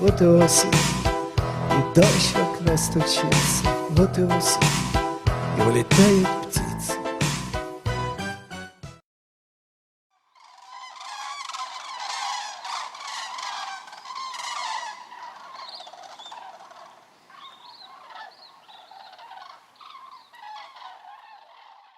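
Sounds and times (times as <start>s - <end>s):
flock of large birds calling: 0.0s - 4.8s, 10.3s - 21.9s.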